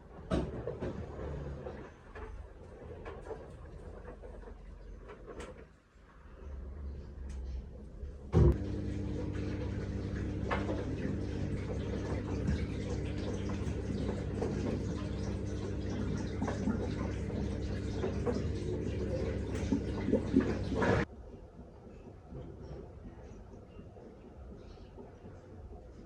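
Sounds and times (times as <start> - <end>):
washing machine motor hum: 0.0 - 26.0
water swishing: 8.5 - 21.1.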